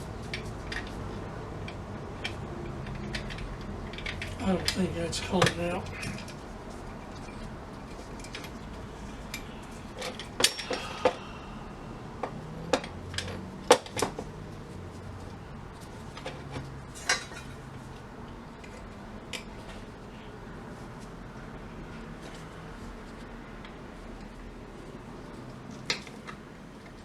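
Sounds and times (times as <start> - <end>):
hand tools clinking on metal: 9.3 - 11.3.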